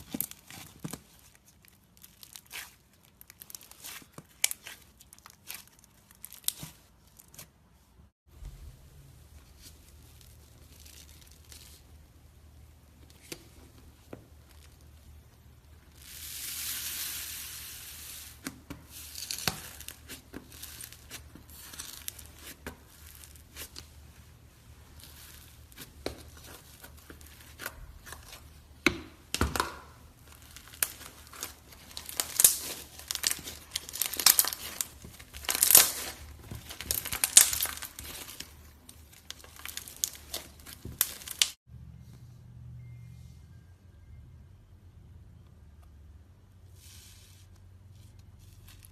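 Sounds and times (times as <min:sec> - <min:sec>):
slime crust crackling: 0:00.0 - 0:07.5, 0:09.5 - 0:28.6, 0:30.0 - 0:41.6.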